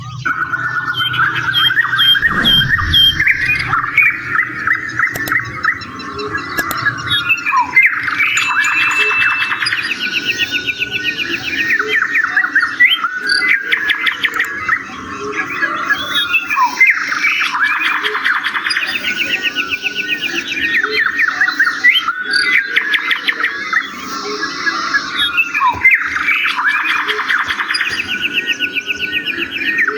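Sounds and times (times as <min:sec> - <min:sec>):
chorus of birds chirping: 0:00.0 - 0:29.9.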